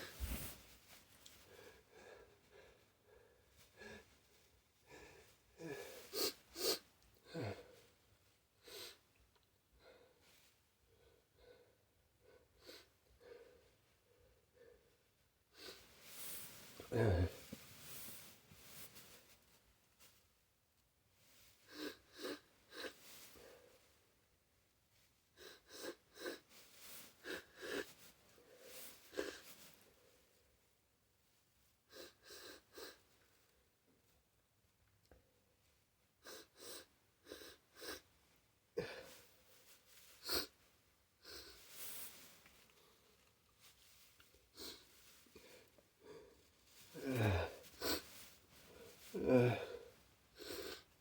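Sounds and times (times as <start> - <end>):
person gasping before a sneeze: 15.6 - 18.8, 45.4 - 50.8.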